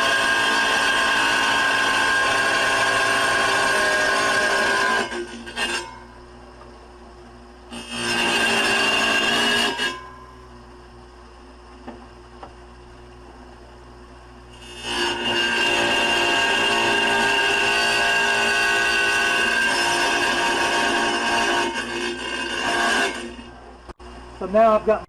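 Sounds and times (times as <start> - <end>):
wet tile saw grinding tile: 0.0 - 6.1, 7.7 - 10.1, 14.5 - 23.6.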